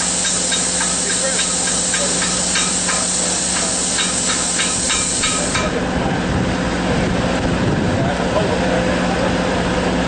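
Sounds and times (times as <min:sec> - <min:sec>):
plasma cutter hissing: 0:00.0 - 0:05.8.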